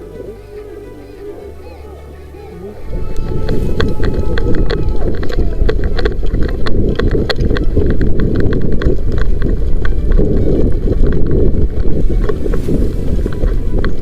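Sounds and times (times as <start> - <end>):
wind noise on microphone: 0.0 - 14.0
camera handling rumble: 2.9 - 14.0
sharp clicks and knocks: 3.2 - 12.6.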